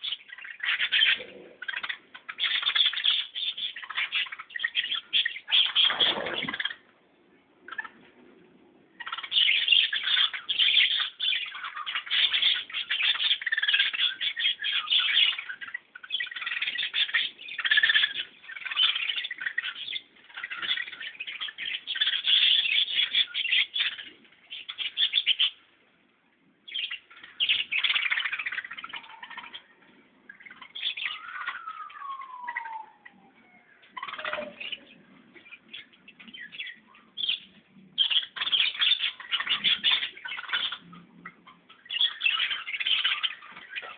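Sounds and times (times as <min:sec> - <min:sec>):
flock of birds chirping: 0:00.0 - 0:43.9
bird call gliding down in pitch: 0:31.1 - 0:35.0.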